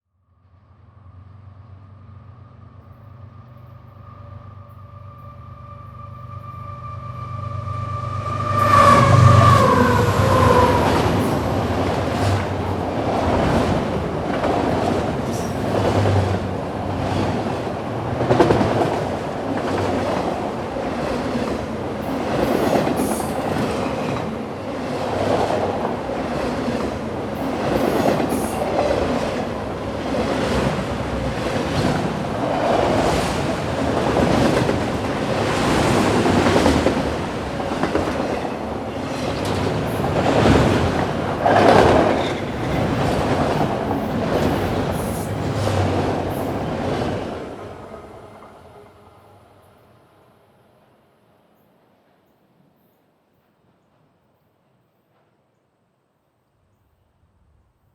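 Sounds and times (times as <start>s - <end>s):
train cars rumbling past: 0.8s - 50.0s
locomotive horn: 4.0s - 11.6s
wheels clacking over rail joints: 8.8s - 47.5s.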